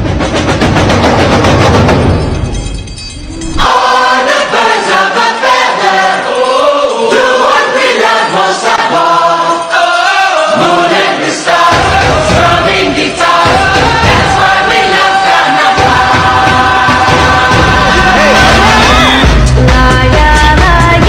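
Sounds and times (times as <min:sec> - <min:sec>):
choir singing solemn chant: 0:03.6 - 0:19.5
bass-heavy music: 0:15.8 - 0:21.0.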